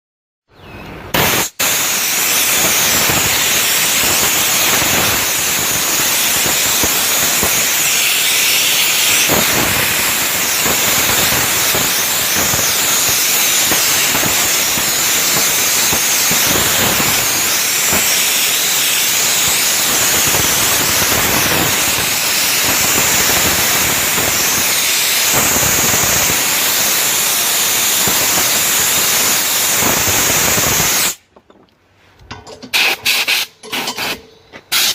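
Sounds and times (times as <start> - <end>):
air compressor hissing: 1.1 - 31.2, 32.7 - 34.9
short sharp hisses: 32.7 - 34.9.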